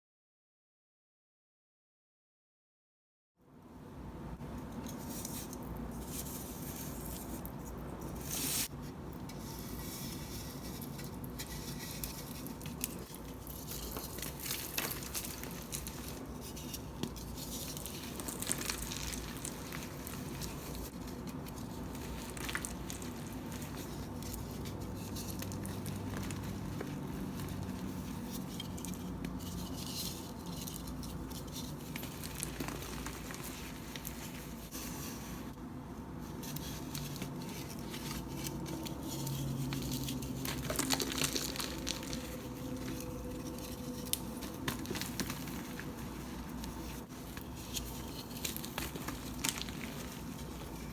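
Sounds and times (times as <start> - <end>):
chalk crunched by hand: 5.0 - 35.5, 36.4 - 50.9.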